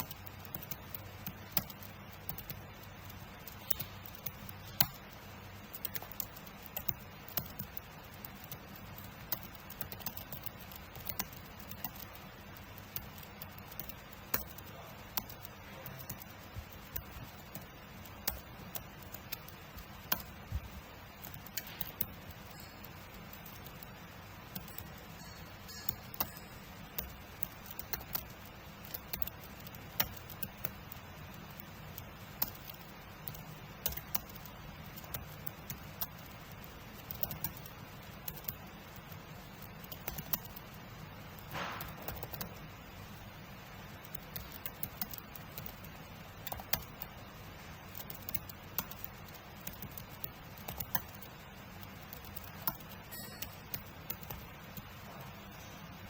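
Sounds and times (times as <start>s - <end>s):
typing on computer keyboard: 0.0s - 56.0s.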